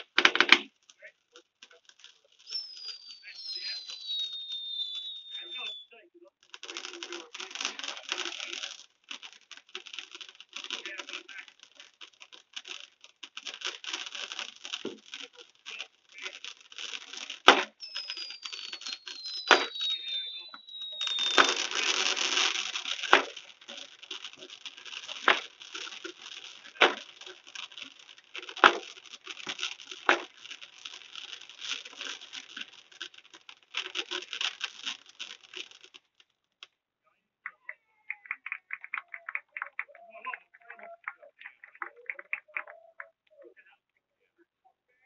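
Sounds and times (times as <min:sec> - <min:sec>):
fireworks bangs: 0:00.0 - 0:36.2, 0:37.5 - 0:43.4
fireworks crackling: 0:00.0 - 0:36.8, 0:37.4 - 0:43.8
falling firework whistles: 0:02.1 - 0:05.9, 0:12.2 - 0:35.9.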